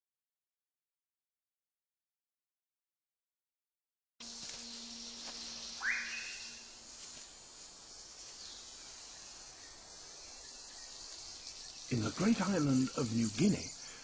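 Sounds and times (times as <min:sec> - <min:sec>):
insects hissing: 0:04.2 - 0:14.0
bird call rising note: 0:04.6 - 0:06.8.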